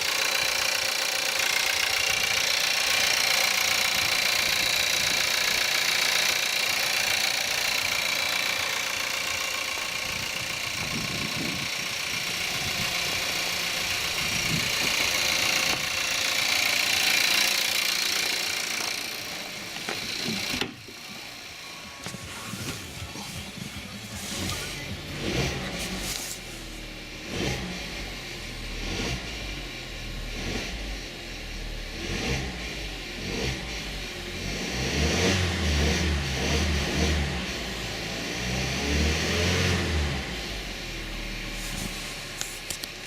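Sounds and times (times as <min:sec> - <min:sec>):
car engine running with rattle: 0:00.0 - 0:43.0.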